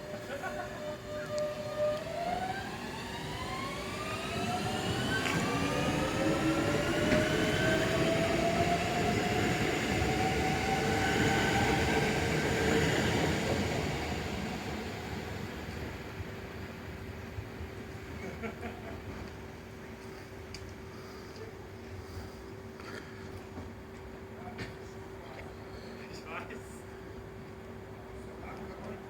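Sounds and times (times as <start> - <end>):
electric train motors whining: 0.0 - 16.3
wheels rumbling on rails: 0.0 - 20.8.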